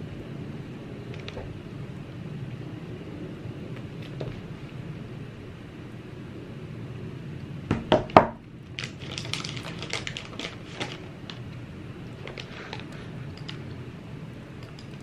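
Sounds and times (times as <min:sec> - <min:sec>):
loud knocks: 0:07.7 - 0:08.4.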